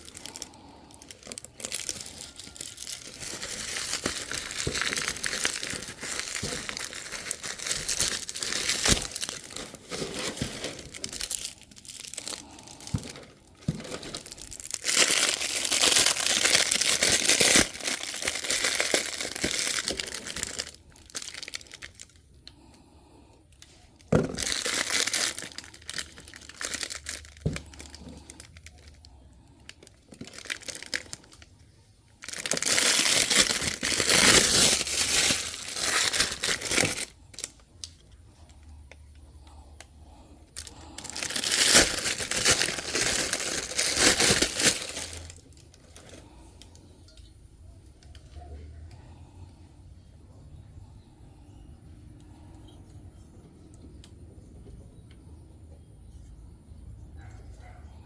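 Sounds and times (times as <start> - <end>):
packaging crinkling and tearing: 0.0 - 22.3, 23.6 - 31.5, 32.2 - 38.0, 40.6 - 46.4.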